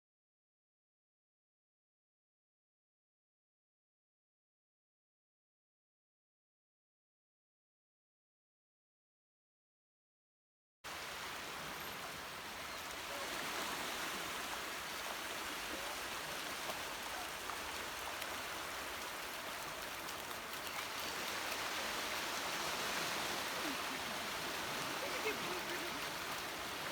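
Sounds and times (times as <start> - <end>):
water rushing and splashing: 10.9 - 26.9.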